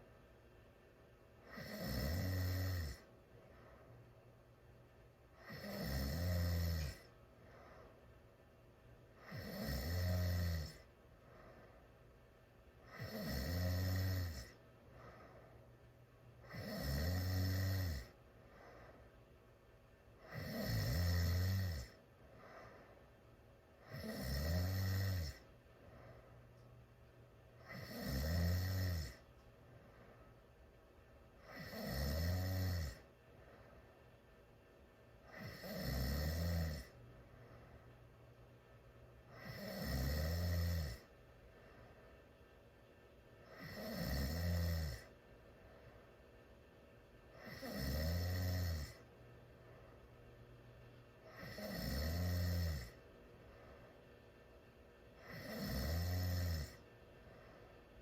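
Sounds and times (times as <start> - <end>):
quiet breaths: 0.0 - 58.0
person snoring loudly: 1.5 - 3.1, 5.4 - 7.1, 9.2 - 10.8, 12.9 - 14.6, 16.5 - 18.1, 20.2 - 22.0, 23.8 - 25.4, 27.6 - 29.2, 31.4 - 33.0, 35.3 - 37.0, 39.3 - 41.1, 43.5 - 45.1, 47.4 - 49.0, 51.3 - 53.0, 55.2 - 56.8.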